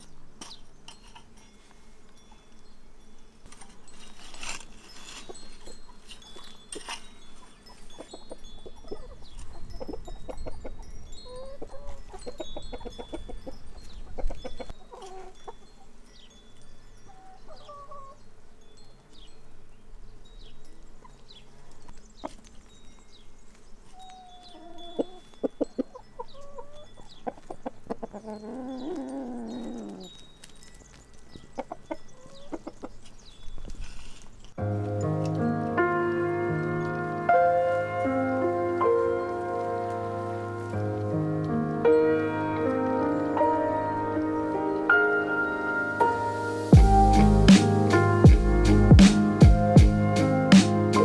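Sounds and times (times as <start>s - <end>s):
small birds chirping: 4.3s - 34.6s
chickens clucking: 7.4s - 15.6s, 24.0s - 30.2s, 31.6s - 33.1s
sharp knock: 47.5s - 50.0s.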